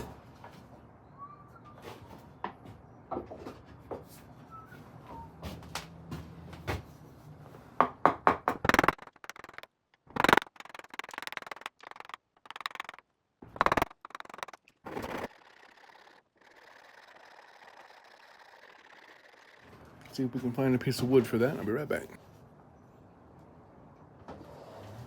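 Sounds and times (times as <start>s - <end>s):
tools and wood clattering: 8.6s - 15.3s.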